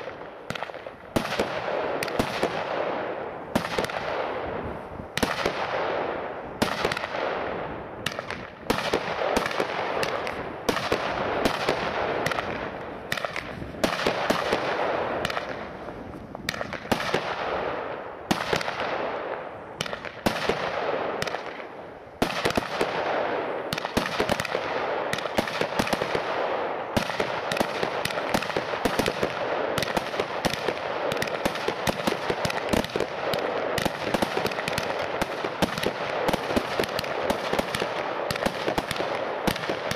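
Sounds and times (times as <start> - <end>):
fireworks shots: 0.0 - 39.9
hiss of burning fireworks: 18.2 - 39.9.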